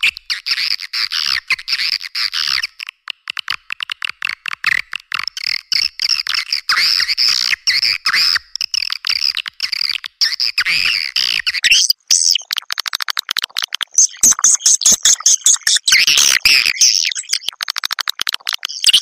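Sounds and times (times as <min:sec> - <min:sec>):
fast clicks: 0:02.8 - 0:06.0, 0:12.1 - 0:19.0.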